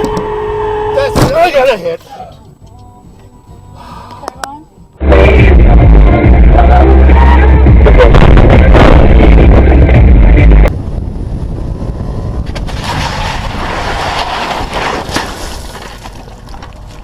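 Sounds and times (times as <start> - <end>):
loud distorted low rumble: 5.0 - 14.8
road and wind noise inside car: 5.6 - 17.0.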